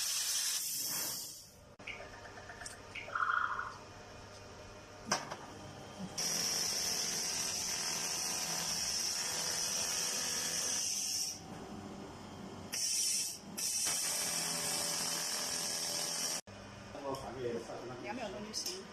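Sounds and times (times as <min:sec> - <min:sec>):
laser welder high hiss: 0:00.0 - 0:01.5, 0:10.5 - 0:11.4, 0:12.7 - 0:16.4.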